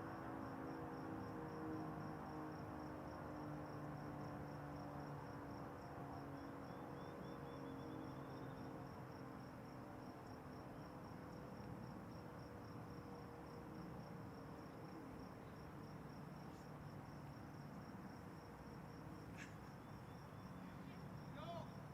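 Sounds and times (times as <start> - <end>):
insect pulsing trill: 6.4 - 9.1.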